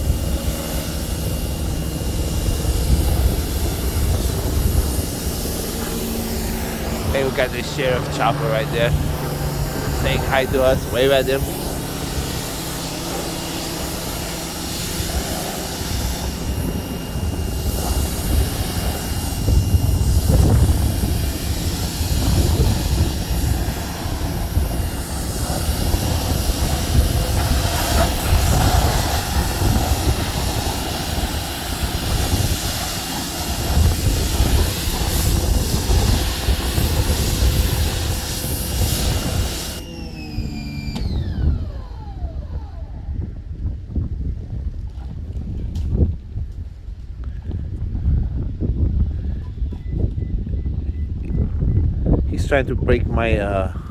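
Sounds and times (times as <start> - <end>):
pressure washer spraying: 0.0 - 40.9
helicopter engine and rotor rumble: 0.0 - 43.6
pressure washer motor whine: 0.0 - 43.8.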